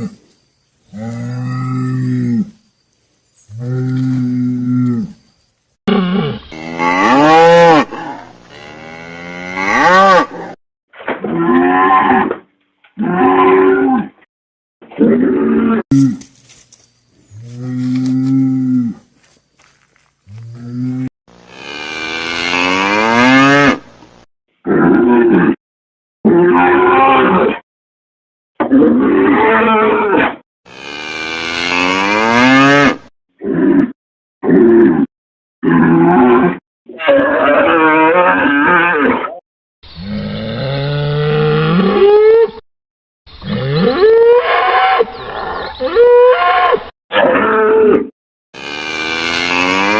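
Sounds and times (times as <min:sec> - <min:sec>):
cattle mooing: 0:03.6 - 0:05.1, 0:06.1 - 0:10.6, 0:17.5 - 0:19.0, 0:48.6 - 0:49.9.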